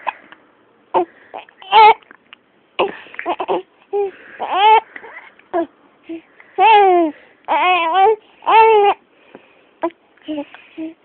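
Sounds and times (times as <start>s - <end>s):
baby fussy crying: 1.0s - 2.0s, 2.8s - 9.0s
baby hiccupping: 1.0s - 2.1s, 2.8s - 9.0s.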